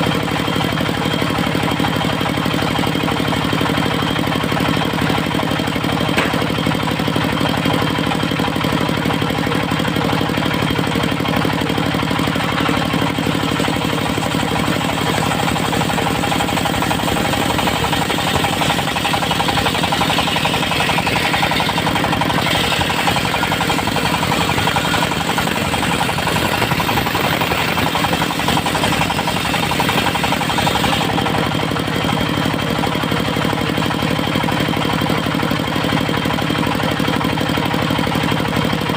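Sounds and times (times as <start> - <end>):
sawmill engine knocking: 0.0 - 38.9
saw blade hissing through wood: 12.8 - 31.2.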